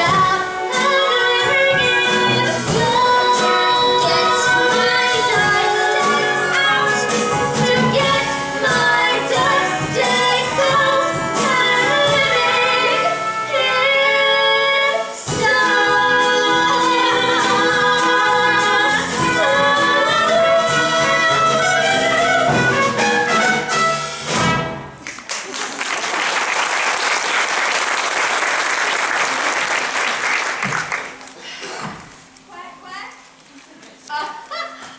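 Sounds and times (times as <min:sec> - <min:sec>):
voices singing a show tune: 0:00.0 - 0:23.2
instrumental accompaniment: 0:00.0 - 0:25.0.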